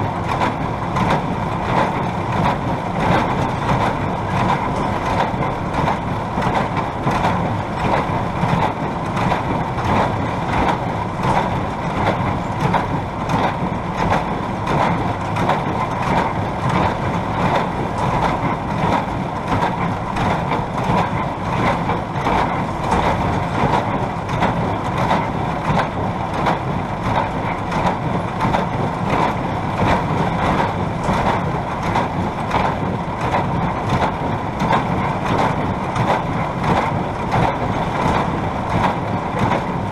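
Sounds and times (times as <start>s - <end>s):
tractor engine running under load: 0.0s - 39.9s.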